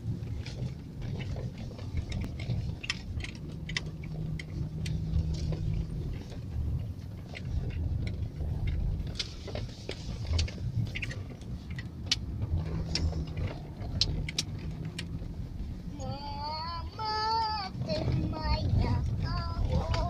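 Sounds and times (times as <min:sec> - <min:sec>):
engine and road rumble: 0:00.0 - 0:20.0
sharp ticks and clicks: 0:00.3 - 0:09.4, 0:10.2 - 0:15.3
faint steady hum: 0:14.3 - 0:20.0.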